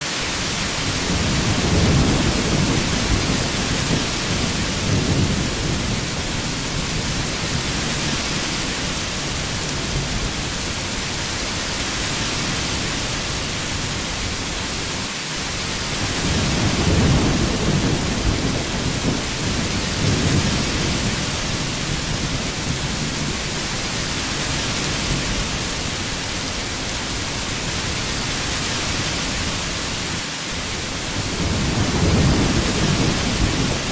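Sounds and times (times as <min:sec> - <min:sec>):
heavy rain: 0:00.0 - 0:33.9.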